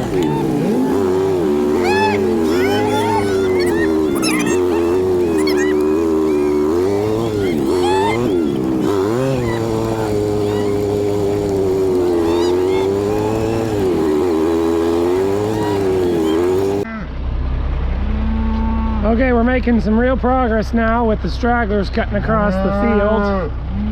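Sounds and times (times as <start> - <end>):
high chirps: 0.0 - 16.8
motor whining: 0.0 - 16.8
steady engine hum: 0.0 - 23.9.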